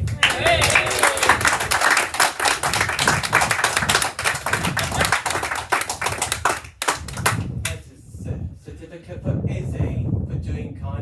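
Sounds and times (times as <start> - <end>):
people clapping: 0.0 - 7.8.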